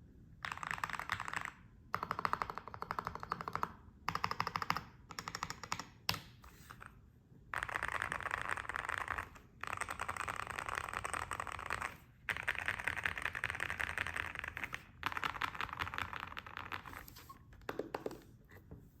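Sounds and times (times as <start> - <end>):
mechanical keyboard typing: 0.4 - 6.2, 7.6 - 16.9.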